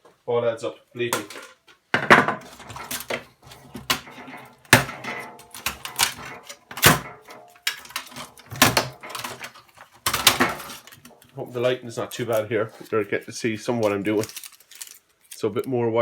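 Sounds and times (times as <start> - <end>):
metal parts clicking and rattling: 2.4 - 12.5, 13.8 - 15.5.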